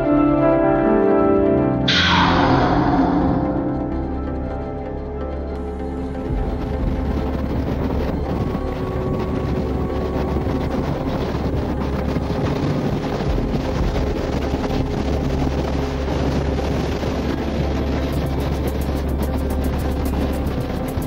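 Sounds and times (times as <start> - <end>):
passenger train rumbling: 0.0 - 21.0.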